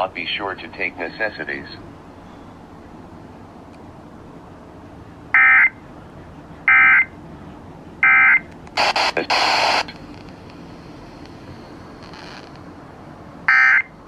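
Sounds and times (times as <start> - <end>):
loud hissing static: 0.0 - 2.1, 8.6 - 13.1.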